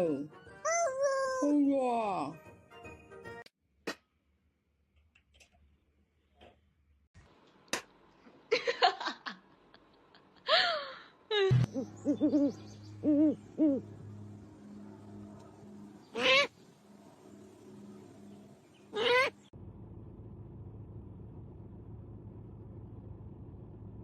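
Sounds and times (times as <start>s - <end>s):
steady low hum: 10.4s - 24.0s
low hoot-like notes: 11.4s - 19.4s
animal cries: 16.1s - 16.5s, 18.9s - 19.5s.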